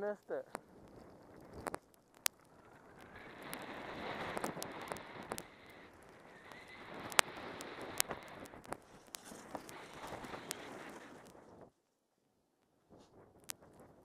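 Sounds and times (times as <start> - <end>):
snowboard scraping over snow: 2.6 - 11.7.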